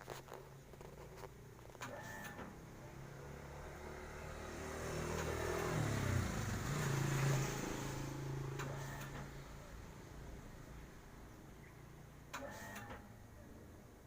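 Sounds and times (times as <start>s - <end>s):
motor vehicle passing by: 1.9s - 12.0s.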